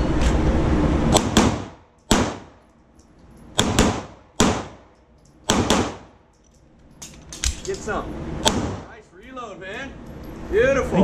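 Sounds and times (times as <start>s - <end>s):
handgun shots with echo: 3.6s - 4.9s, 5.5s - 6.2s.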